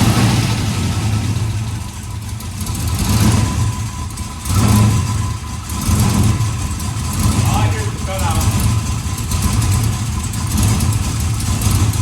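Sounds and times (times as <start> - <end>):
car engine running unevenly: 0.0 - 12.0.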